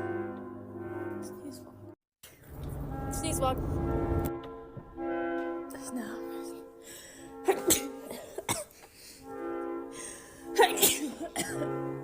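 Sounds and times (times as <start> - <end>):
background music with held notes: 0.0 - 2.0, 2.6 - 12.0
woman sneezing: 7.5 - 8.6, 10.6 - 11.6.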